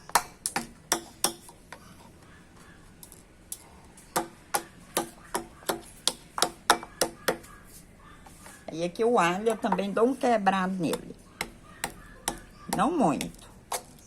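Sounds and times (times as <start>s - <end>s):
cloves being pounded: 0.0s - 1.6s, 4.1s - 7.5s, 11.0s - 14.0s.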